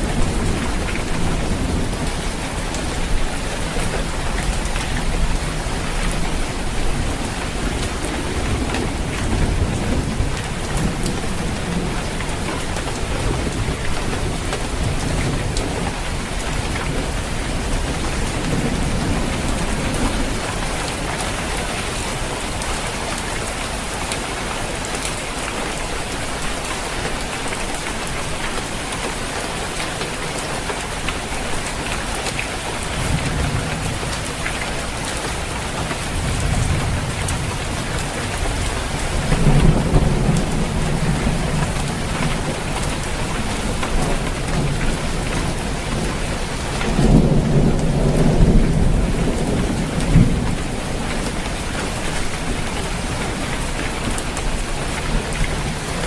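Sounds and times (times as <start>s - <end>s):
rain falling on a roof: 0.0s - 56.0s
rolling thunder: 36.0s - 55.8s.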